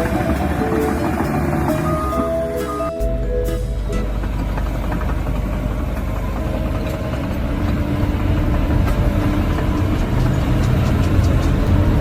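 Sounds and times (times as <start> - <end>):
held tone: 0.0 - 5.0
bulldozer diesel engine running: 0.0 - 12.0.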